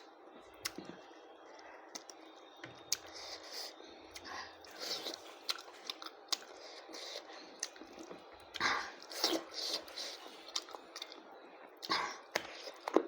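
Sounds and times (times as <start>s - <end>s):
person chewing wetly: 4.6s - 13.0s.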